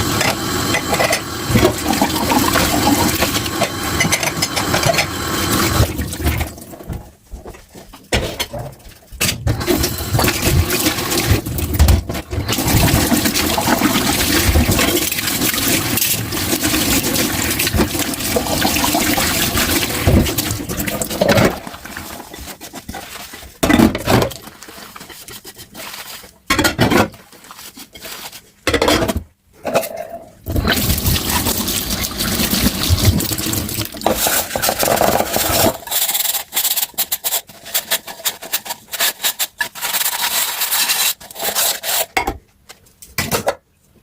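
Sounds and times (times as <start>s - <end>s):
dishes splashing and knocking: 0.2s - 7.0s, 9.2s - 25.2s, 26.5s - 27.2s.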